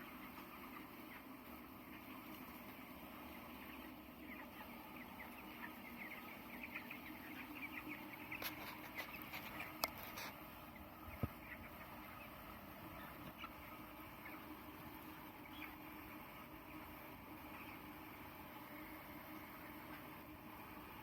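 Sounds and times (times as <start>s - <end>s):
chicks peeping: 0.0s - 21.0s
steady low hum: 0.0s - 21.0s.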